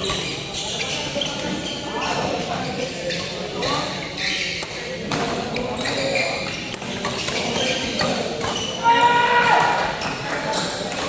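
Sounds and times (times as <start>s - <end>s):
shuttlecock hits and thuds: 4.6s - 8.6s.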